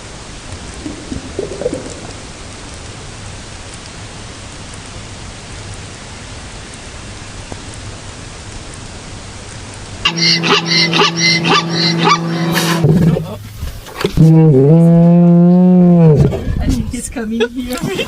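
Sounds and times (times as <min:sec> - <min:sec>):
heavy rain: 0:00.0 - 0:10.1.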